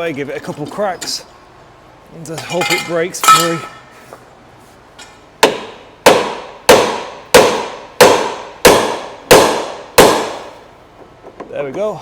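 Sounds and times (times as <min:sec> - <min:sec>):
hammer striking metal part: 0:02.4 - 0:03.9.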